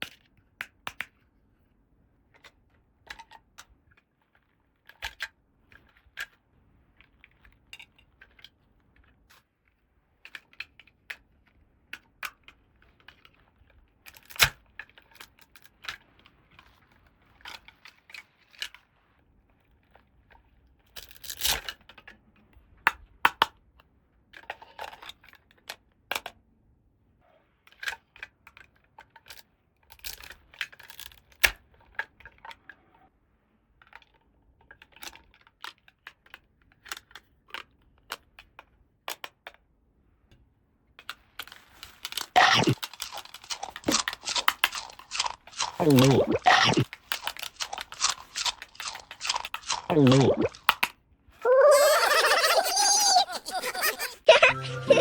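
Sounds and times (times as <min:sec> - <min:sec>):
packaging crinkling: 0:41.9 - 0:50.7.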